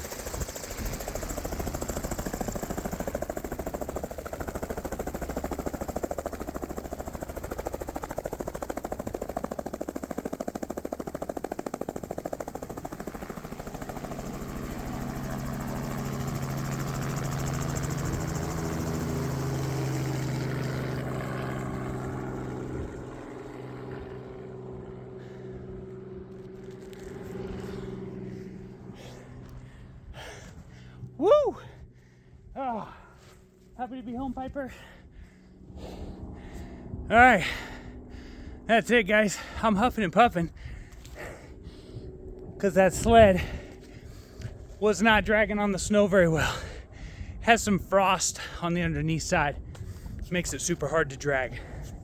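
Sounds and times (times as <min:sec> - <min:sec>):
helicopter rotor beat: 0:00.0 - 0:52.0
engine hum: 0:12.5 - 0:33.7.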